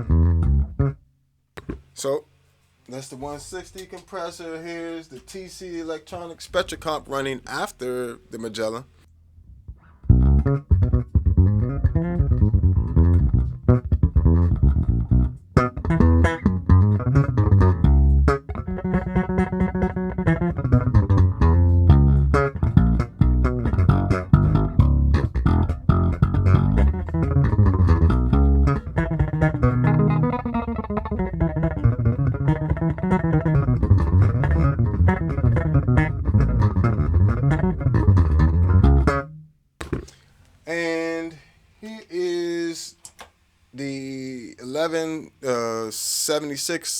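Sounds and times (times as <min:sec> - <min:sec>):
electric bass plucked notes: 0:00.0 - 0:01.0, 0:09.4 - 0:39.5.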